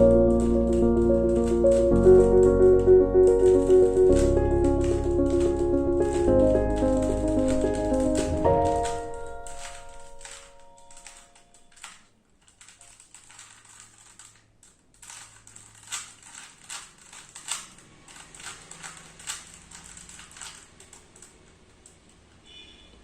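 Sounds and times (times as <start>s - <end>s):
puzzle cube plastic clicks: 0.0s - 22.3s.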